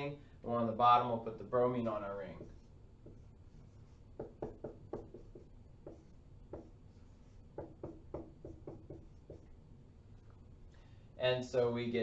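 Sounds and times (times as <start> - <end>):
faint low room hum: 0.0 - 12.0
pen strokes and taps: 2.3 - 9.6.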